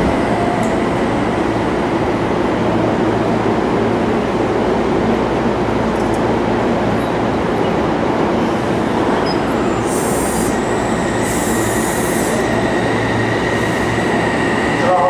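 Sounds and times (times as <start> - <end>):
train wheels rumbling on rail: 0.0 - 15.0
high hiss bursts: 9.8 - 14.1.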